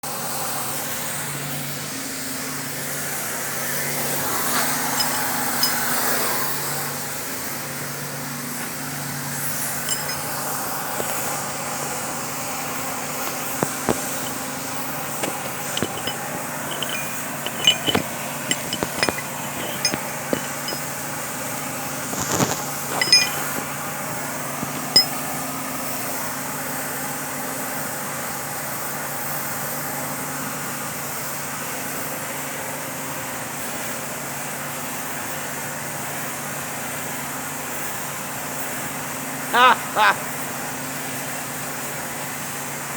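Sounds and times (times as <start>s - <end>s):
metal clinks and taps: 4.9s - 6.0s, 9.8s - 11.3s, 13.2s - 21.0s, 22.2s - 23.7s, 24.6s - 25.2s.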